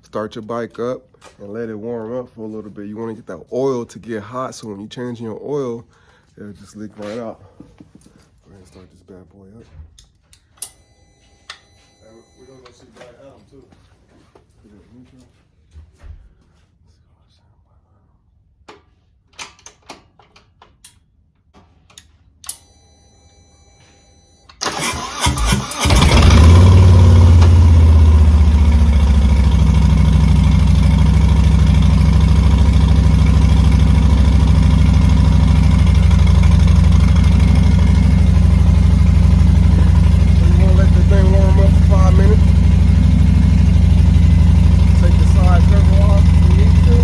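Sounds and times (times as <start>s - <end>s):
motorcycle engine starting and idling: 24.6s - 47.0s.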